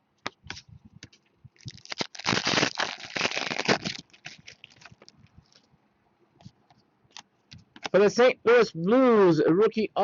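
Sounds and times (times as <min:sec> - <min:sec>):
packaging crinkling: 0:01.6 - 0:05.7.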